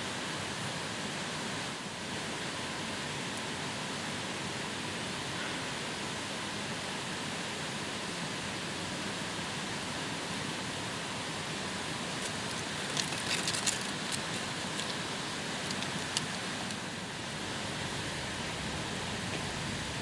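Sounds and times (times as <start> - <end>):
steady rushing background noise: 0.0 - 20.0
campfire crackling and popping: 12.1 - 17.0.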